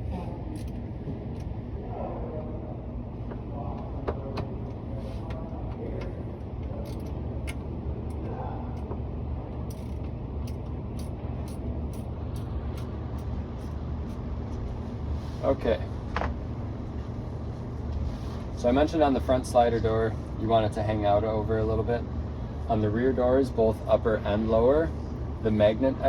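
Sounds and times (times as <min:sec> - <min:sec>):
steady low hum: 0:00.0 - 0:26.0
ratcheting clicks of screwdriver: 0:06.8 - 0:07.6, 0:09.6 - 0:13.3.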